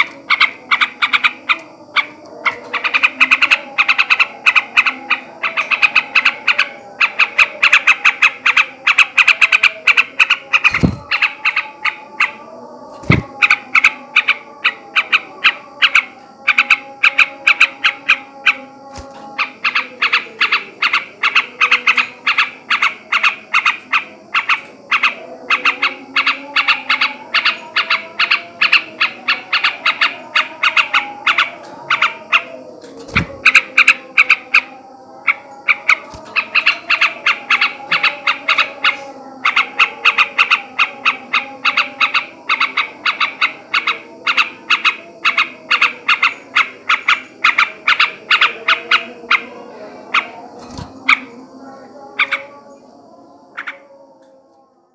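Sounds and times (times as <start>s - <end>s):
bulbul chattering: 0.0s - 52.9s.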